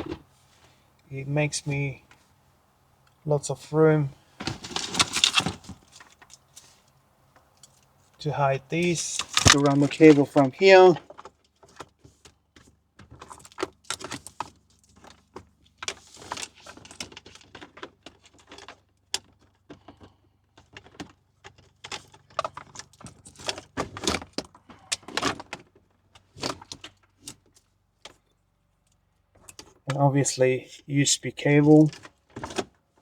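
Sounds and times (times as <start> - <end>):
cables and plastic parts clicking: 8.7 - 11.8.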